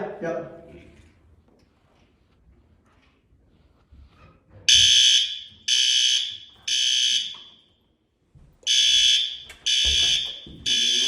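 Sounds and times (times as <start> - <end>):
fire alarm blasts: 4.7 - 7.9, 8.6 - 11.0.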